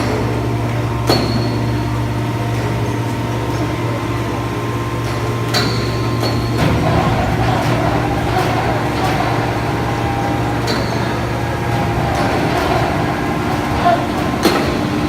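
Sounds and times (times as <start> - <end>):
baler power unit humming: 0.0 - 15.0
metal clanks: 5.1 - 15.0.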